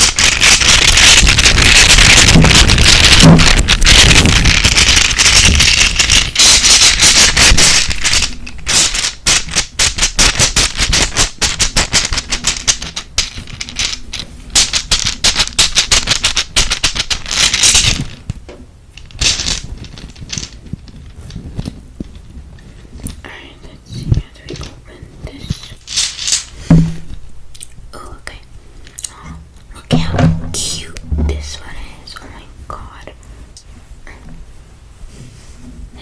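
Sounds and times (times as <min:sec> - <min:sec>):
scratchy rubbing: 0:00.0 - 0:18.3, 0:19.0 - 0:23.2, 0:23.9 - 0:27.1.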